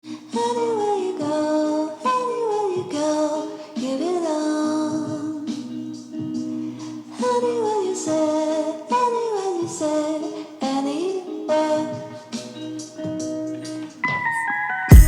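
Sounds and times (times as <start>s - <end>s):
woman singing: 0.0s - 14.5s
instrumental accompaniment: 12.1s - 15.0s.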